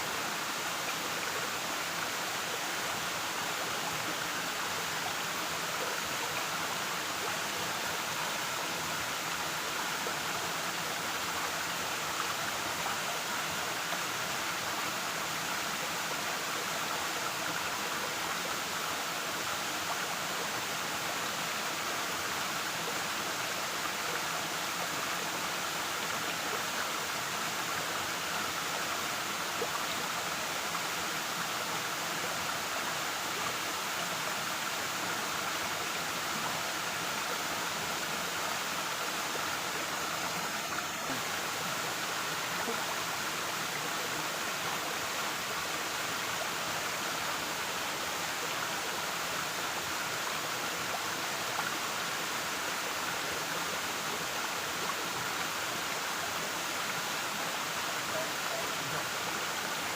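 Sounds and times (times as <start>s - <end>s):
waterfall roaring: 37.6s - 48.4s.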